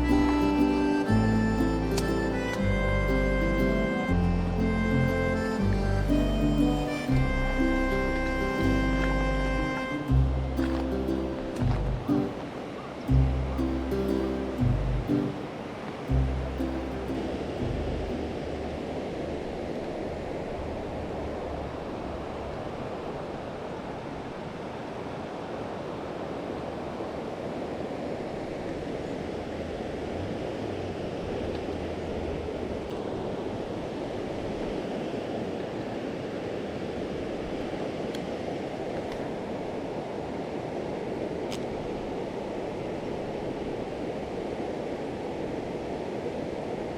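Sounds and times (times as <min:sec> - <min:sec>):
river water rushing: 0:00.0 - 0:46.9
faint low rumble: 0:03.6 - 0:12.3, 0:13.1 - 0:15.3, 0:16.1 - 0:18.9.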